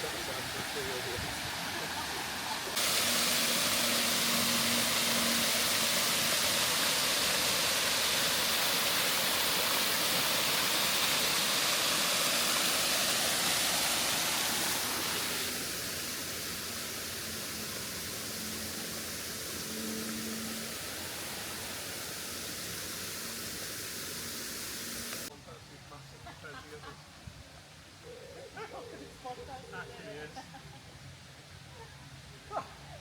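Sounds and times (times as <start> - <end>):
waterfall rushing: 0.0 - 25.3.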